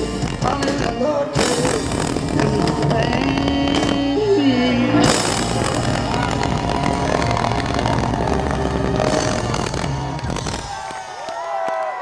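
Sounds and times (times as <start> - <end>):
bass guitar ringing: 0.0 - 10.7
distorted electric guitar chord: 4.6 - 10.4.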